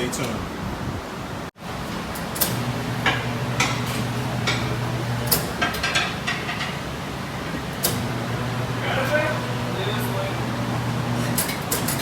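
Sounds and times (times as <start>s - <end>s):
steady low hum: 6.4s - 12.0s.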